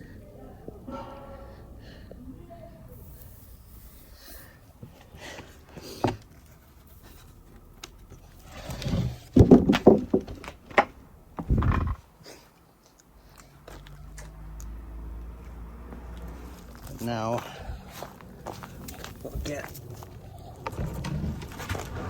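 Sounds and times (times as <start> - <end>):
wood and tools clattering: 4.8 - 12.0, 18.0 - 22.0.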